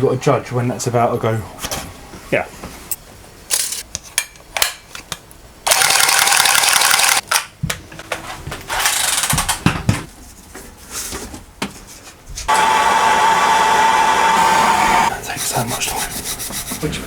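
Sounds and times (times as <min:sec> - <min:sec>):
blowtorch hissing: 0:12.5 - 0:15.1.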